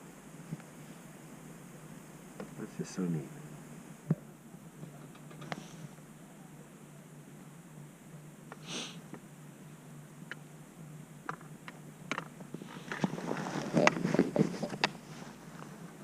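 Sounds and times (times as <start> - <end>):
steady low hum: 0.0 - 16.0
short sniff-like hiss: 5.4 - 6.0, 8.6 - 9.1.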